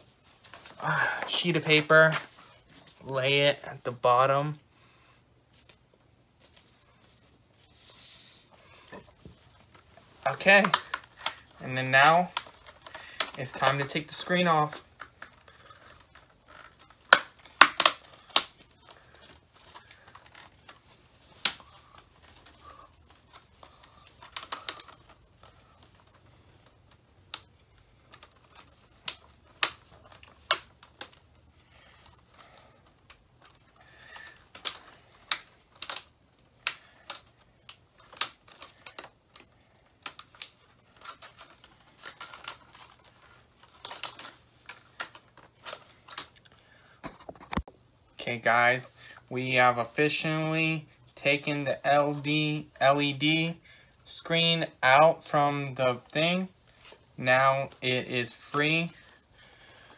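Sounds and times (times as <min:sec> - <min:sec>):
faint low hum: 0:00.0 - 0:59.9.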